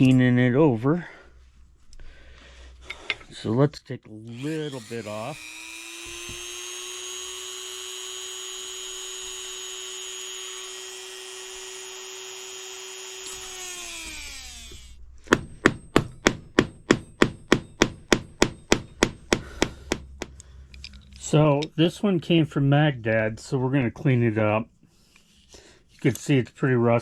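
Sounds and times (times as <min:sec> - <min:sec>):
rotary tool whining: 0:04.3 - 0:15.0.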